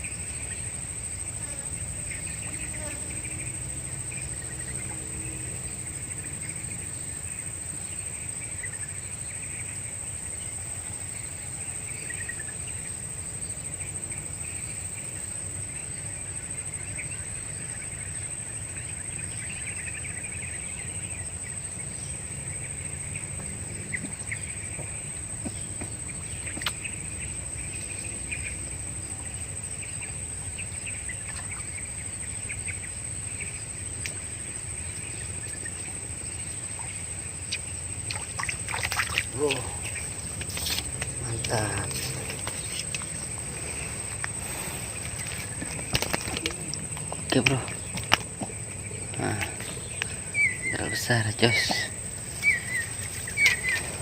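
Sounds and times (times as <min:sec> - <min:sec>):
insect drone: 0:00.0 - 0:54.0
bird chirps: 0:36.7 - 0:54.0.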